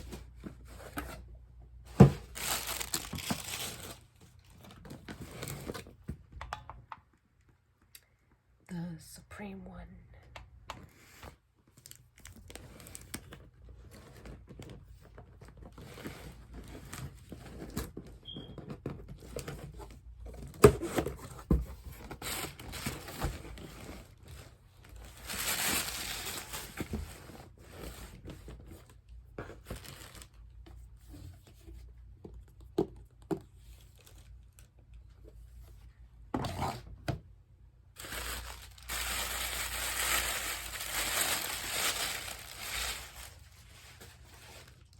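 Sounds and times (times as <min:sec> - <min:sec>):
packaging tearing and crinkling: 0:02.2 - 0:05.9, 0:25.0 - 0:27.0, 0:38.0 - 0:44.9.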